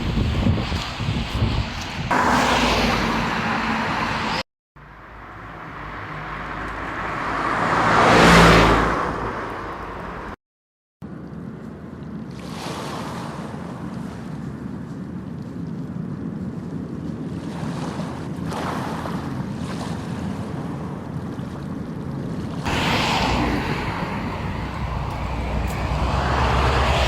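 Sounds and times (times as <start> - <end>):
wind or surf noise: 0.0 - 4.4, 12.1 - 27.0
car passing by: 2.1 - 4.4, 5.2 - 10.4, 22.6 - 27.0.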